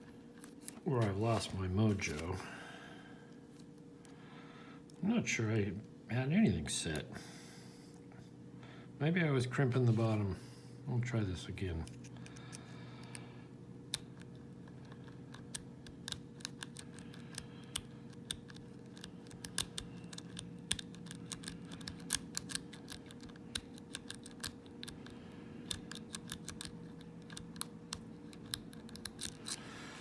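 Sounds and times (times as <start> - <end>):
faint steady hum: 0.0 - 30.0.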